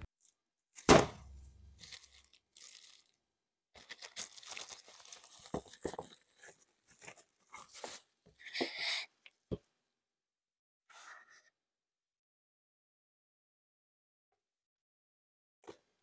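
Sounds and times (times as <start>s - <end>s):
wrapping crinkling: 1.7s - 3.2s, 3.8s - 8.1s
packaging tearing: 1.8s - 3.2s, 3.8s - 7.8s.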